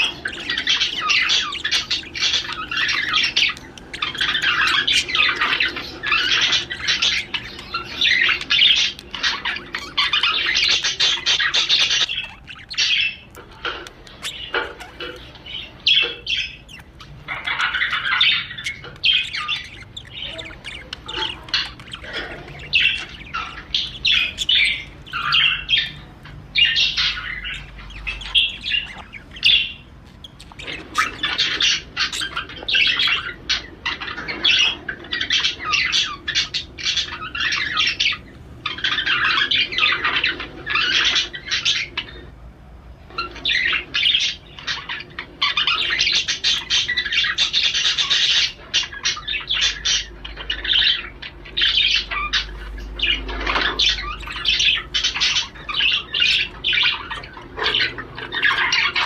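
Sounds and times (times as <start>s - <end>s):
budgerigar warbling and chattering: 0.0s - 42.3s, 43.1s - 59.0s.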